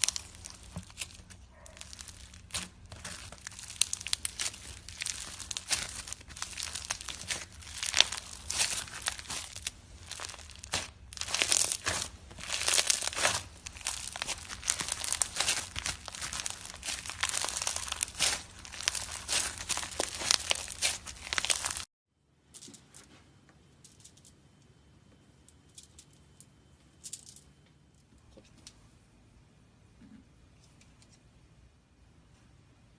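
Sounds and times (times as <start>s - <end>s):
slime squeezed by hand: 0.0s - 21.8s.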